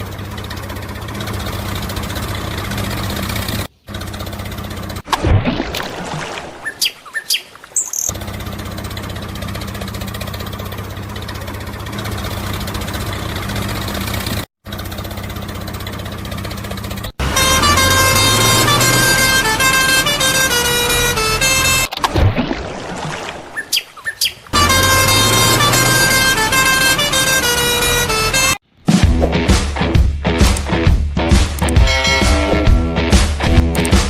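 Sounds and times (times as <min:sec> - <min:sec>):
tractor engine running: 0:00.0 - 0:06.6, 0:07.8 - 0:22.4, 0:23.2 - 0:34.0
musical vehicle horn: 0:17.2 - 0:21.9, 0:24.6 - 0:28.6, 0:31.7 - 0:32.9.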